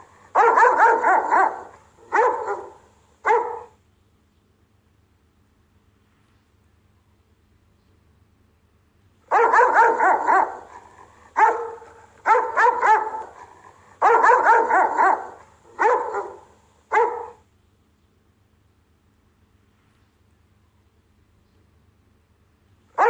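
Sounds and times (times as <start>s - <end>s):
dog barking: 0.0s - 3.8s, 9.3s - 17.4s.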